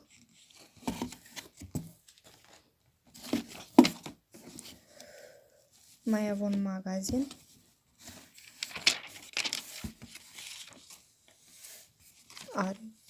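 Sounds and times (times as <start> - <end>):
paper catalogue rustling: 6.2 - 13.0.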